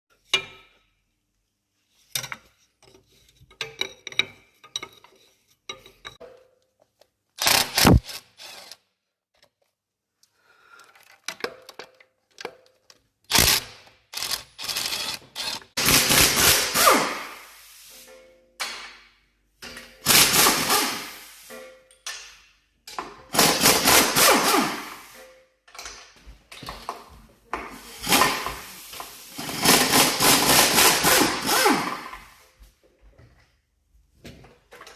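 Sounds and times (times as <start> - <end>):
power tool running: 7.4 - 8.8, 29.4 - 32.3.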